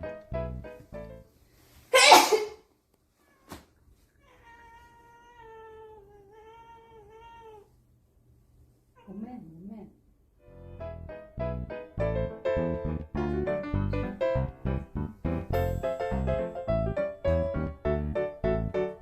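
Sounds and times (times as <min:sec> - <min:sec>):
person sneezing: 0:01.9 - 0:02.7
cat meowing: 0:04.2 - 0:07.7.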